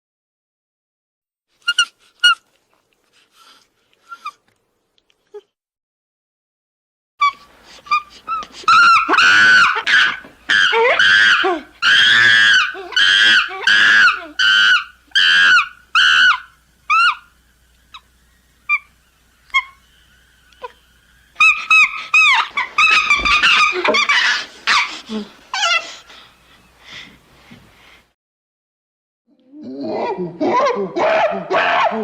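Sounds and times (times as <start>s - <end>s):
chimpanzee-like screaming calls: 7.2s - 26.0s, 29.8s - 32.0s.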